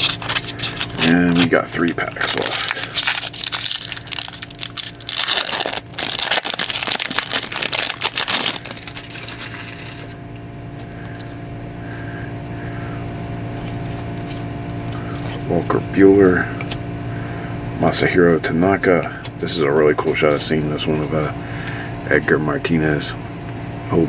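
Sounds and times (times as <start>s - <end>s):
wrapper tearing and crinkling: 0.0s - 10.2s
steady low hum: 0.0s - 24.0s.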